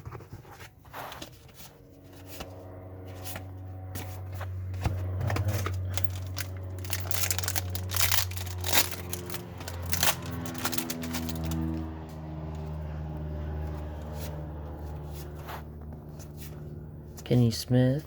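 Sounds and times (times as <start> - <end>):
trading cards shuffled: 5.2 - 11.8
card pack wrapper crinkling: 5.7 - 11.8.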